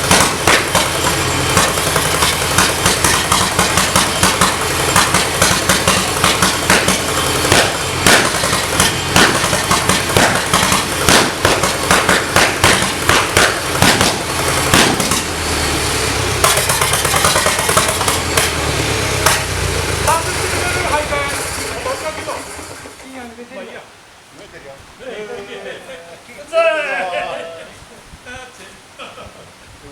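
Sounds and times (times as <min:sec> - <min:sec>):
sharp engine cracks: 0:00.0 - 0:23.0
locomotive engine running: 0:00.0 - 0:23.4.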